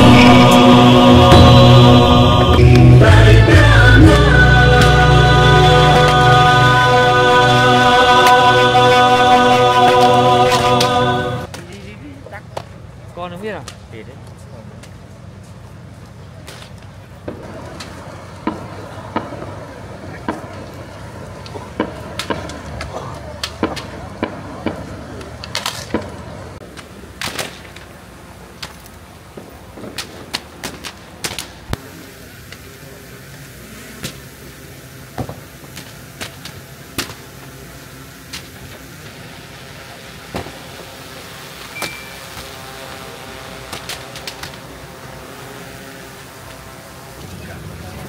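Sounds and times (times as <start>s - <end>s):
steady low hum: 0.0s - 48.0s
fireworks bangs: 16.5s - 45.4s
high whistle: 41.7s - 42.3s.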